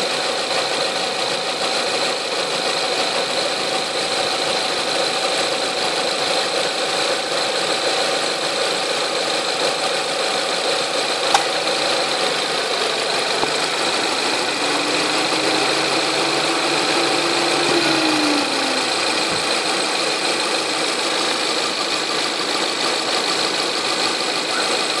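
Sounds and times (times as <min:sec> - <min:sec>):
car engine running with whine: 0:00.0 - 0:25.0
faint rising and falling tone: 0:13.0 - 0:20.8.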